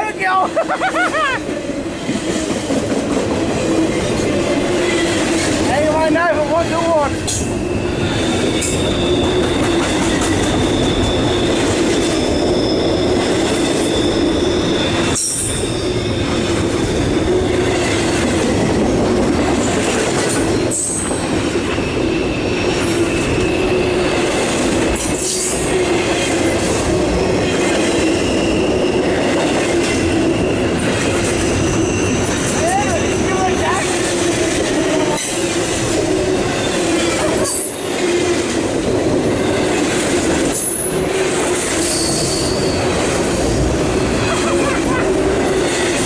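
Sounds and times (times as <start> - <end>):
freight train rumble: 0.0 - 46.0
train wheel squeal: 1.0 - 46.0.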